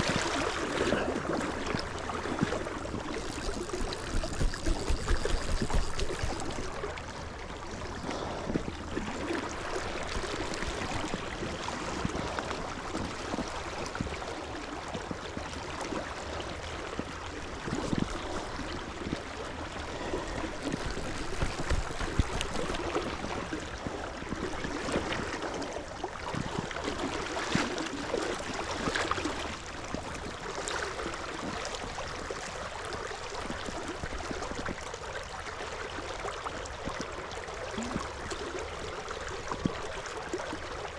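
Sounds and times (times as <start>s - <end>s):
small water splashes: 0.0s - 40.9s.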